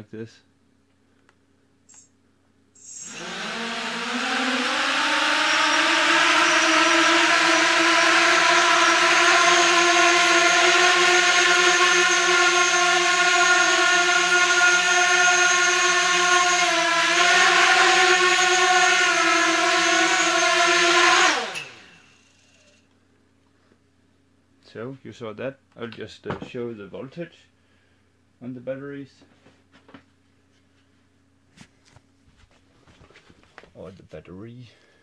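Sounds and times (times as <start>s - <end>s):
drone motors high-pitched buzz: 2.8s - 22.8s.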